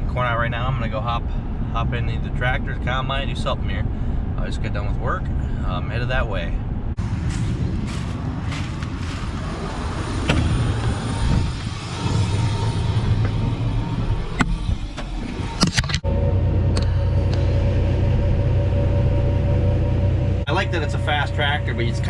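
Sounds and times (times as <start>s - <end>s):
engine drone with whine: 0.0s - 22.0s
vehicle rumble: 0.0s - 22.0s.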